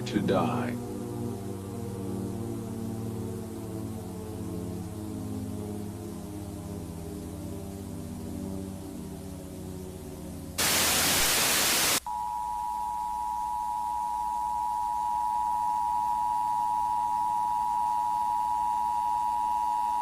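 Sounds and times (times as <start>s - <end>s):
loud burst of static: 10.6s - 12.1s.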